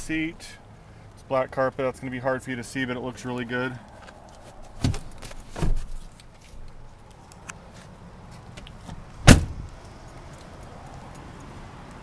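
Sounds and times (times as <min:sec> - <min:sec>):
car door slamming: 0:04.8 - 0:06.0, 0:08.8 - 0:09.7
dull thump: 0:04.8 - 0:06.0, 0:08.9 - 0:09.8.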